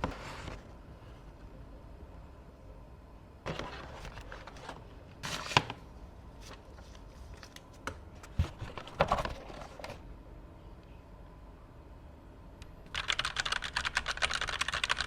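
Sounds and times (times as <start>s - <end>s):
packaging rustling and scraping: 3.5s - 5.8s, 8.3s - 10.0s.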